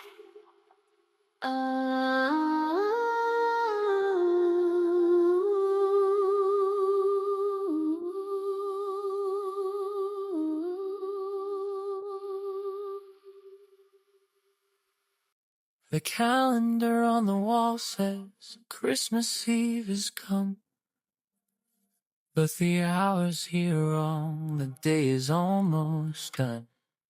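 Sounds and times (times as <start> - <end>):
person humming a melody: 1.4 - 13.6.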